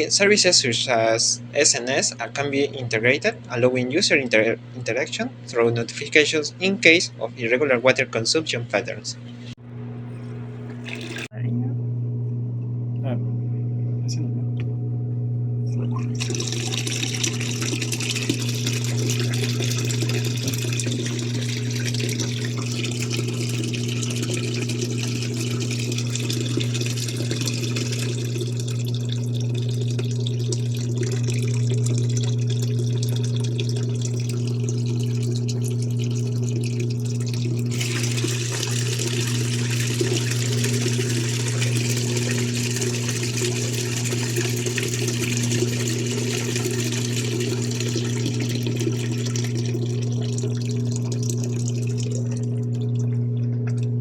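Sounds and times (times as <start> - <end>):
low electric hum: 0.0 - 54.0
water running from a tap: 10.7 - 11.3, 15.7 - 54.0.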